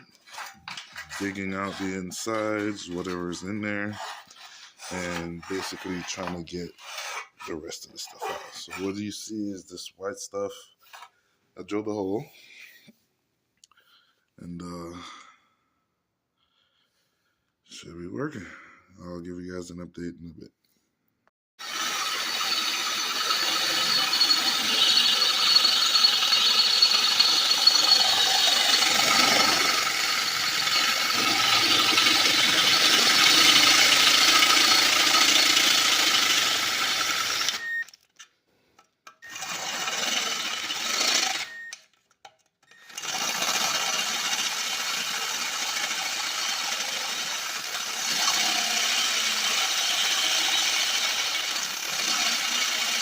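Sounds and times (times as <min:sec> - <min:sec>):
power drill boring into ceramic: 0:00.0 - 0:07.4, 0:21.6 - 0:38.0, 0:39.2 - 0:41.8, 0:42.6 - 0:53.0.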